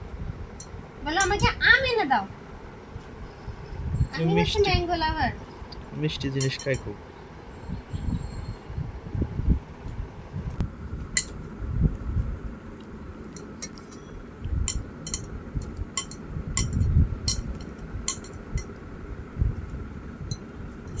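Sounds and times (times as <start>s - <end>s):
low thumps and rumble: 14.4s - 21.0s.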